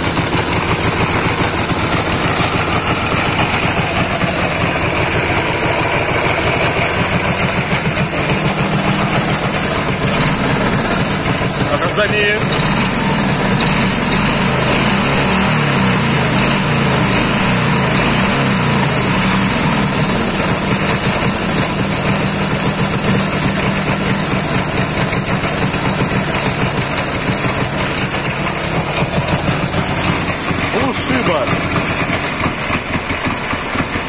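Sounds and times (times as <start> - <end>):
motorcycle engine running: 0.0 - 34.0.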